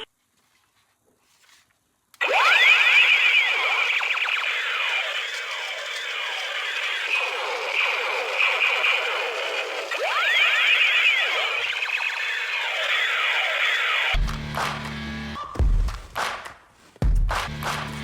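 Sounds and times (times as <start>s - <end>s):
toy electronic pitch sweeps: 2.2s - 14.2s
music: 14.2s - 18.0s.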